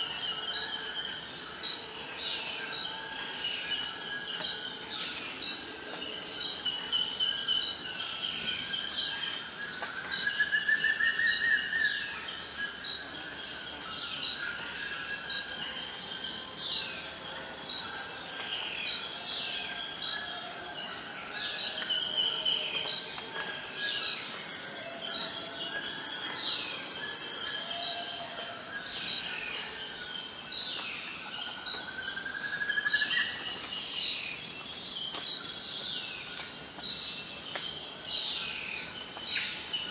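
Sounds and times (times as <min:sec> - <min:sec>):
high-pitched insect drone: 0:22.9 - 0:29.9.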